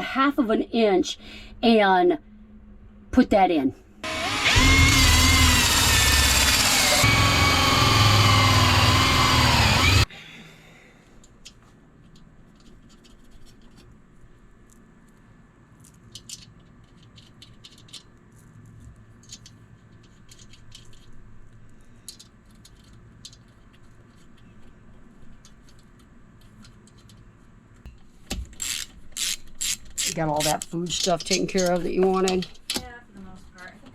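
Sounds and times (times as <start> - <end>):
power drill boring a hole: 4.0 - 10.1.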